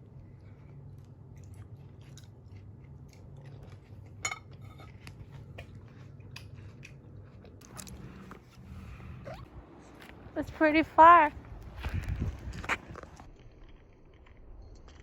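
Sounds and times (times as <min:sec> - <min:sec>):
low steady hum: 0:00.0 - 0:15.0
small clicks and crunches: 0:11.8 - 0:15.0.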